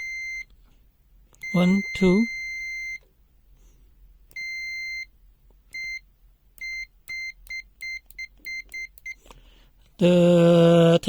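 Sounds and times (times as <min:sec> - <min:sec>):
multimeter continuity beeps: 0:00.0 - 0:00.5, 0:01.4 - 0:03.0, 0:04.3 - 0:05.1, 0:05.7 - 0:09.2.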